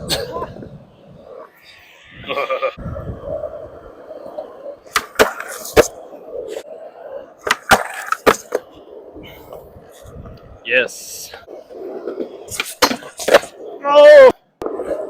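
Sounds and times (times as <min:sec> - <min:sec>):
skateboard rolling: 0:00.0 - 0:15.0
skateboard deck clacks: 0:04.8 - 0:06.6, 0:07.4 - 0:08.8, 0:12.0 - 0:13.6.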